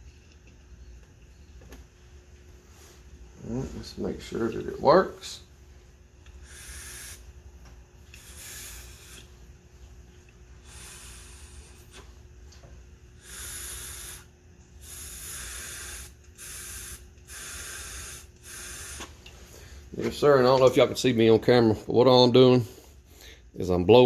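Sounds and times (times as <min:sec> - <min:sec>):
air hissing through valve: 0:06.4 - 0:07.3, 0:08.1 - 0:09.3, 0:10.6 - 0:12.0, 0:13.2 - 0:19.2
breath puffs blown into tube: 0:06.4 - 0:07.3, 0:08.1 - 0:09.3, 0:10.6 - 0:12.1, 0:13.2 - 0:19.7.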